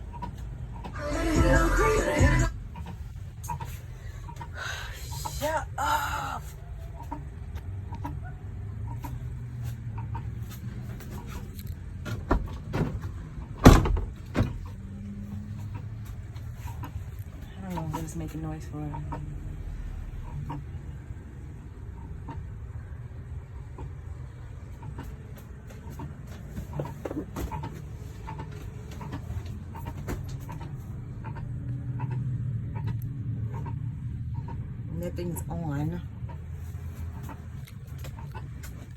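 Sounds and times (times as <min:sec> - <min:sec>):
fan squeaking: 0:00.0 - 0:23.0, 0:23.6 - 0:38.9
steady low rumble: 0:00.0 - 0:27.0, 0:27.6 - 0:38.9
low steady hum: 0:00.0 - 0:38.9
air conditioner knocking: 0:12.0 - 0:14.8, 0:25.0 - 0:30.8.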